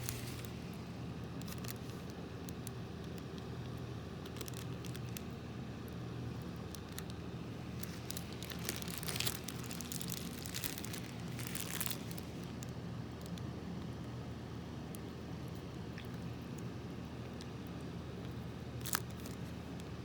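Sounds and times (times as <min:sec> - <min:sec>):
steady low hum: 0:00.0 - 0:20.0
slime crackling and popping: 0:01.4 - 0:13.5, 0:18.2 - 0:20.0.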